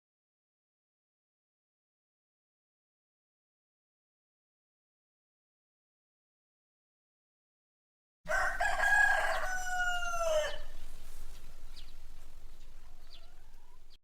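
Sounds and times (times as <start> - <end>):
rooster crowing: 8.3 - 14.0
small birds chirping: 8.3 - 14.0.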